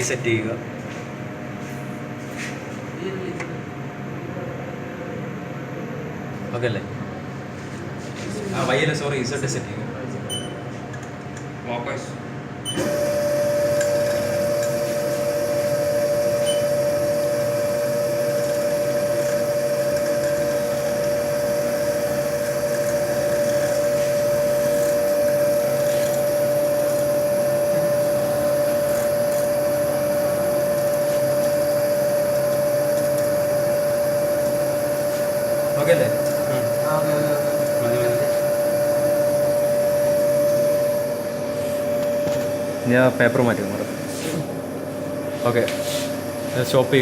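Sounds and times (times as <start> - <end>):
milling machine spindle whine: 12.7 - 47.0.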